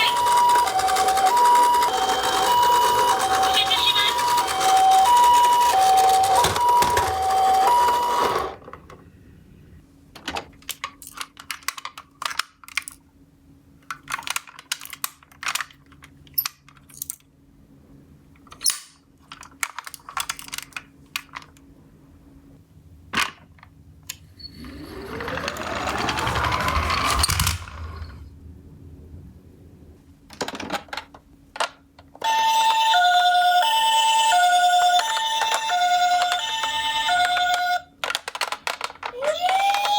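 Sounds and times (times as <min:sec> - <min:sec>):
plastic toy clicks and clatters: 0:00.0 - 0:08.5, 0:10.6 - 0:13.0, 0:13.8 - 0:17.2, 0:18.5 - 0:21.6, 0:34.4 - 0:39.9
toy siren: 0:00.0 - 0:08.6, 0:24.4 - 0:27.6, 0:32.2 - 0:37.9, 0:39.1 - 0:39.9
low rumble: 0:24.5 - 0:30.2.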